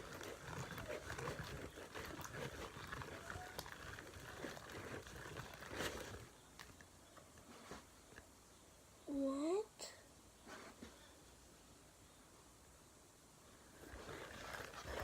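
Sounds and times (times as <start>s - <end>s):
slime squelching: 0.0s - 6.8s.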